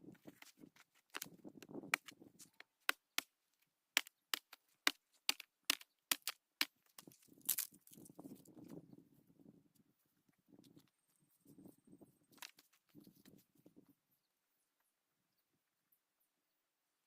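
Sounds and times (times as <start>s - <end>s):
axe chopping wood: 4.0s - 6.7s
dry leaves and sticks crunching: 5.3s - 8.1s.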